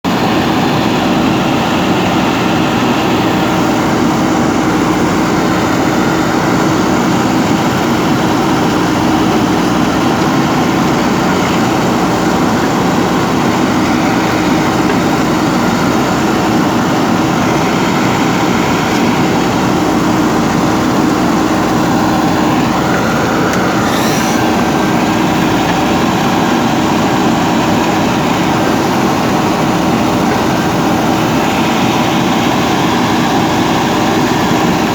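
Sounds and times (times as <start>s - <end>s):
diesel engine running: 0.0s - 34.9s
short rising whine: 20.1s - 27.4s.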